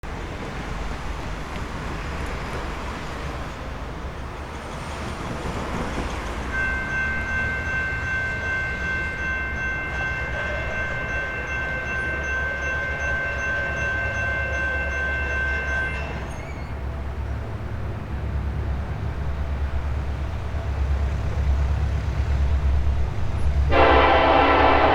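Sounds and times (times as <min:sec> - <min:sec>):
locomotive and train rumbling: 0:00.0 - 0:24.9
locomotive air horn chord: 0:12.1 - 0:16.2, 0:23.7 - 0:24.9.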